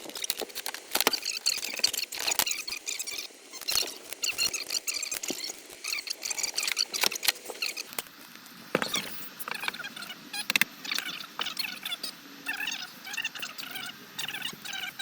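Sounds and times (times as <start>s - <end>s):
tools and cables clicking and rattling: 0.0s - 9.8s.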